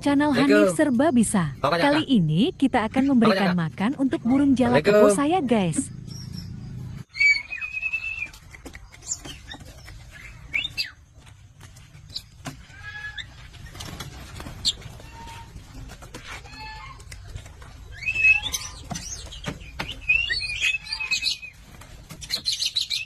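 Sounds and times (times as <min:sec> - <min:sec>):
bird whistling and chattering: 0:06.0 - 0:11.0, 0:17.9 - 0:21.6.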